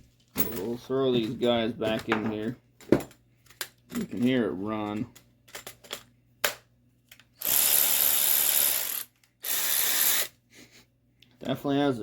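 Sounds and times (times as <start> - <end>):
electric ratchet motor running: 7.4 - 10.3.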